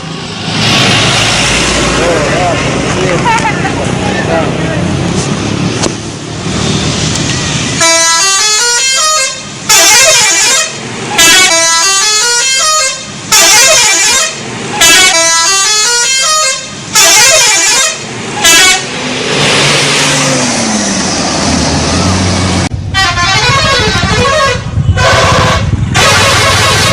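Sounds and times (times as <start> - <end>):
musical air horn blasts: 7.8 - 18.9, 22.9 - 26.9.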